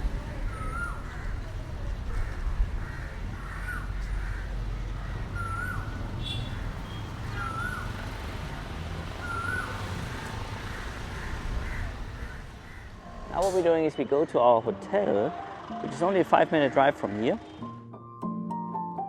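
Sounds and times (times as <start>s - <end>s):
crow cawing: 2.1s - 6.7s, 9.2s - 13.4s.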